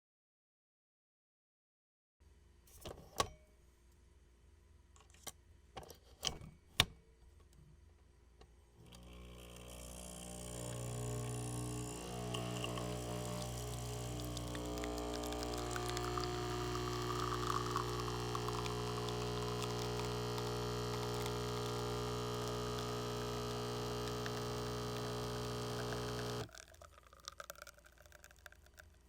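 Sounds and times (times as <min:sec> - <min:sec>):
coffee machine pump humming: 0:08.8 - 0:28.8
coffee pouring: 0:09.0 - 0:29.0.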